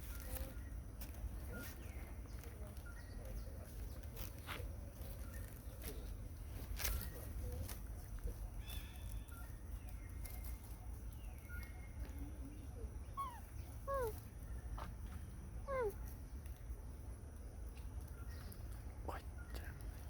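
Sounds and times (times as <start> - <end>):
rustling: 0.0 - 12.4
monkeys squeaking: 13.1 - 14.2.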